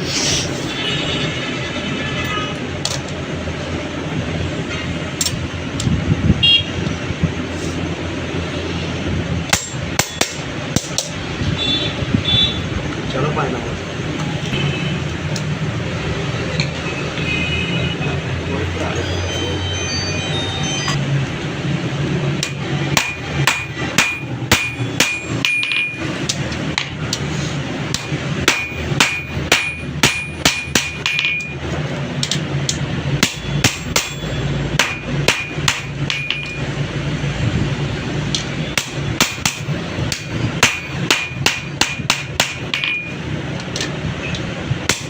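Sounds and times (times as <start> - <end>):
hammer striking metal: 9.5 - 11.2, 22.4 - 27.3, 27.9 - 31.6, 32.2 - 36.7, 38.3 - 43.2.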